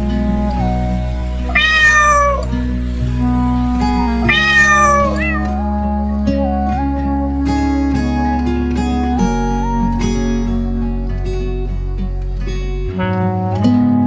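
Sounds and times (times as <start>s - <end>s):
background music: 0.0s - 14.0s
cat meowing: 0.5s - 2.7s, 3.8s - 5.8s.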